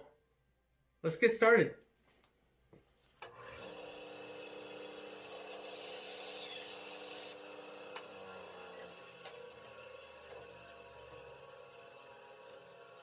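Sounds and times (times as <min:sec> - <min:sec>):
power tool cutting wood: 0:03.2 - 0:13.0.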